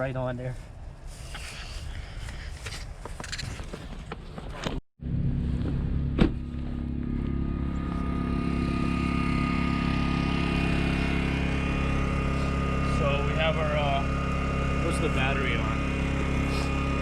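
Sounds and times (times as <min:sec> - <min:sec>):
portable generator engine running: 0:05.0 - 0:17.0.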